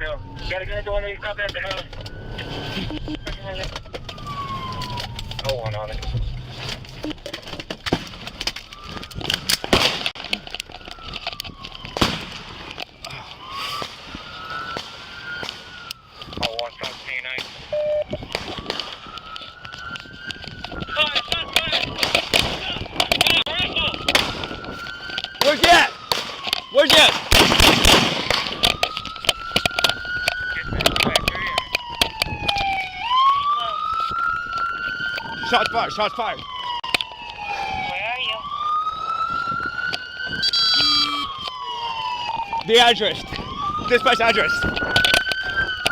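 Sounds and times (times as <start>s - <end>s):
police siren wailing: 0.0s - 45.9s
sharp clicks and knocks: 18.3s - 32.9s, 44.7s - 45.9s.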